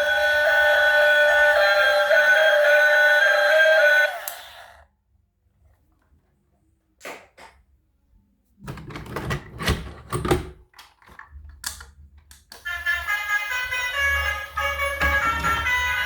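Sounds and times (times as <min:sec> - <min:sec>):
tune playing: 0:12.7 - 0:16.0.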